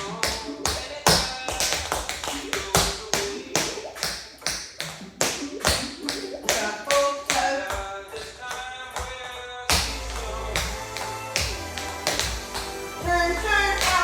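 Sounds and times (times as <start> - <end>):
tap shoes on hard floor: 0.0 - 14.0.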